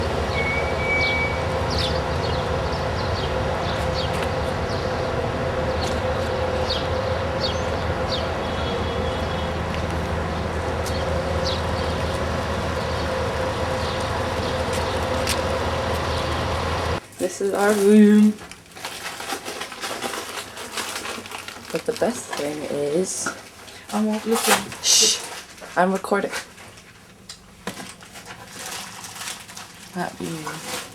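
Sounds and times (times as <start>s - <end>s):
vehicle rumbling: 0.0s - 17.1s.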